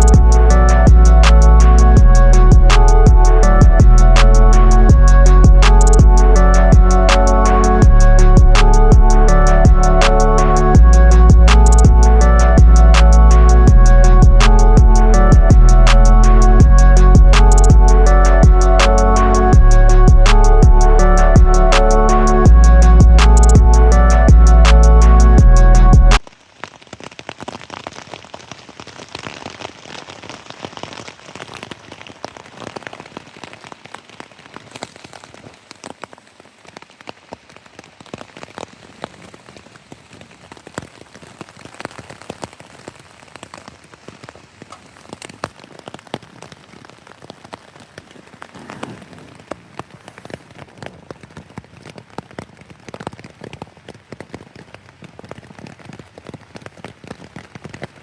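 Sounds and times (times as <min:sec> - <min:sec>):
heavy rain falling: 0:00.0 - 0:58.0.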